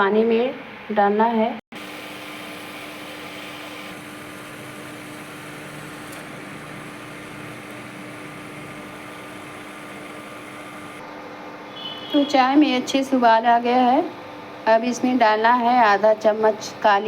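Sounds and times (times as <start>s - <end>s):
tea boiling in a pan: 1.8s - 11.0s.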